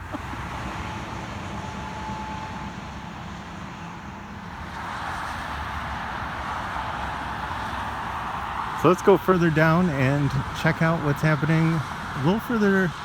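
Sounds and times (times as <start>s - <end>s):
tyres rushing on pavement: 0.0s - 13.0s.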